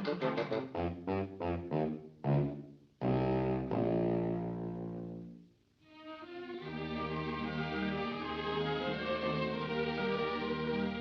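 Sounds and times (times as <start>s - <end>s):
string-led music passage: 0.0s - 0.8s, 5.8s - 11.0s
orchestral cartoon music: 0.0s - 5.2s, 5.9s - 11.0s.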